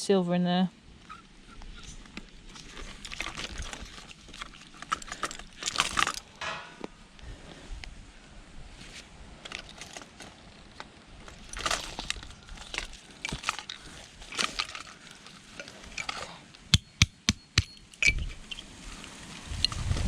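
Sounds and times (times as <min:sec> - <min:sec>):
metal clicks and clinks: 0:17.5 - 0:18.7.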